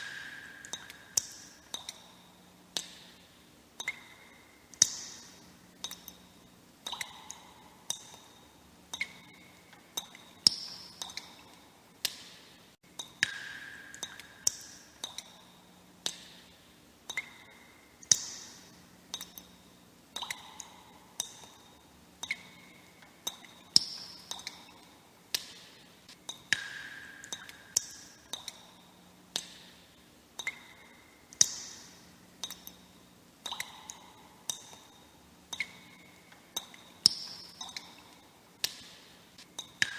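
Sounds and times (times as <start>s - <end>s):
water droplets plinking: 0.0s - 3.1s, 3.8s - 12.2s, 13.0s - 16.4s, 17.1s - 18.5s, 20.2s - 25.6s, 26.3s - 29.7s, 30.4s - 38.8s.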